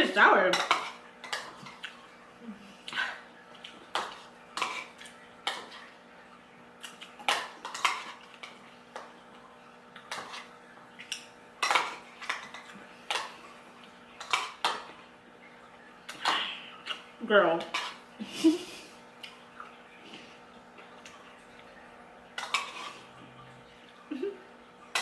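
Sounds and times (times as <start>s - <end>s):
spoons clinking against bowls: 0.5s - 1.8s.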